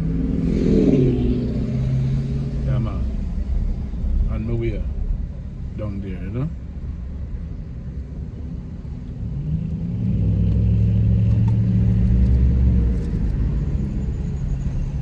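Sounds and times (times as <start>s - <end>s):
car engine accelerating: 0.0s - 5.7s.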